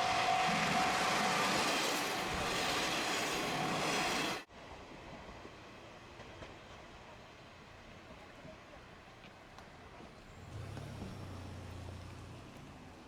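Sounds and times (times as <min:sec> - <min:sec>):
diesel train passing: 0:00.0 - 0:04.5.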